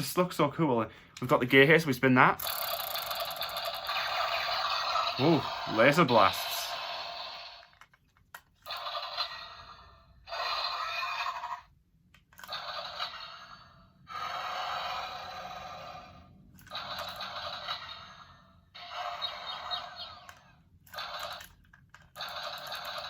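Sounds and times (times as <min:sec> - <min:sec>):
toy laser-blast sound effects: 0:02.4 - 0:07.7, 0:08.7 - 0:11.6, 0:16.7 - 0:18.2, 0:18.8 - 0:21.5, 0:22.2 - 0:23.0.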